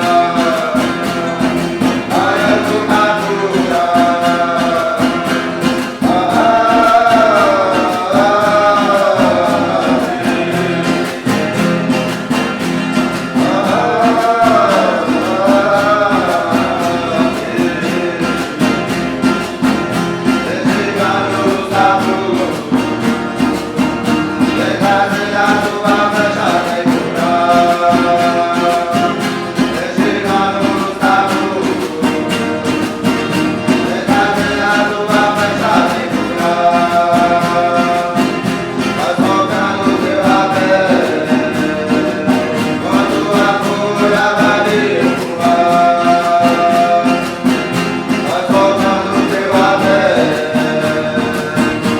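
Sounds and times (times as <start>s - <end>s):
strummed string instrument: 0.0s - 51.9s
voices chanting: 0.0s - 51.9s.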